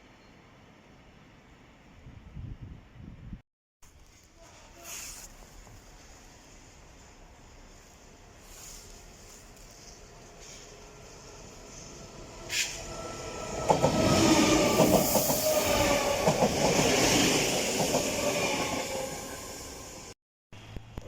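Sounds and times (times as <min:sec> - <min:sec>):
faint train whine: 0:04.1 - 0:20.7.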